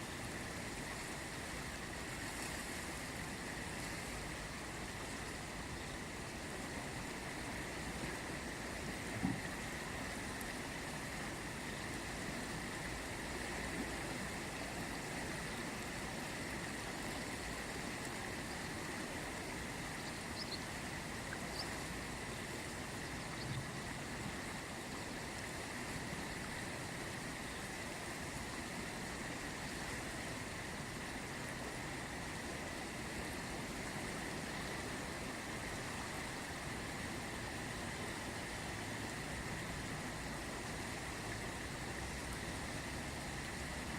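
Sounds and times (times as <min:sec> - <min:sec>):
river water rushing: 0:00.0 - 0:43.9.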